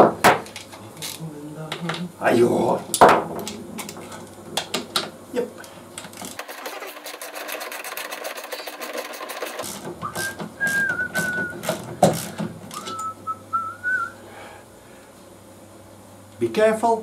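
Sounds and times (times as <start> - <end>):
rapid mechanical clicking: 6.0 - 13.0
person whistling: 10.0 - 11.8, 12.8 - 14.2.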